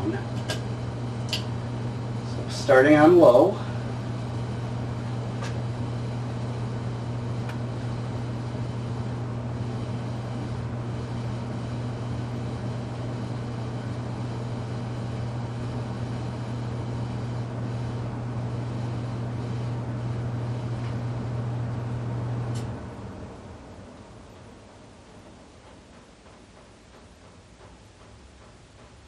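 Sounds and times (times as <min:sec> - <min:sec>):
ceiling fan motor hum: 0:00.0 - 0:29.0.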